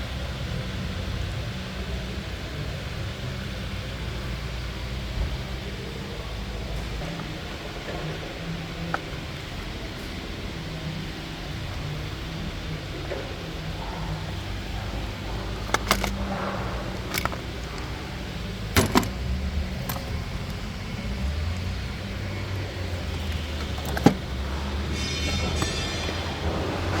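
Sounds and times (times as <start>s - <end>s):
sharp clicks and knocks: 15.6s - 18.0s, 18.8s - 20.6s, 23.0s - 24.7s.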